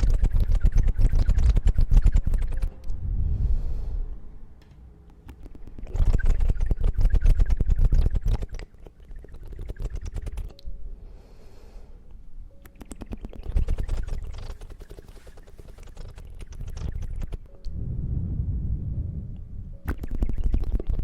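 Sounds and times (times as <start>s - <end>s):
crackling and scratching on microphone: 0.0s - 2.8s, 5.1s - 10.6s, 12.6s - 17.6s, 19.9s - 21.0s.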